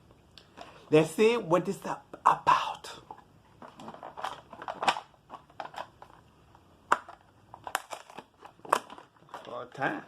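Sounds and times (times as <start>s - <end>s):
plastic packaging crinkling: 3.6s - 6.3s, 6.9s - 10.0s.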